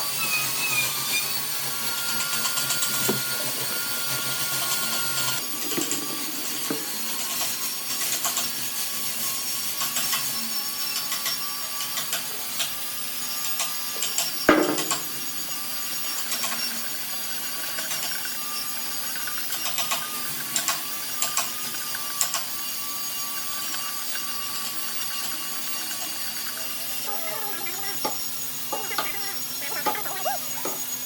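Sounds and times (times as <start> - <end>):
voice or animal call: 27.0 - 30.9.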